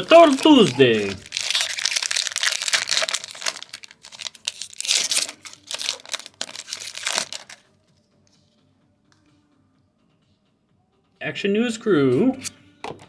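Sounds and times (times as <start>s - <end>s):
foil wrapper crinkling and tearing: 0.0s - 7.6s.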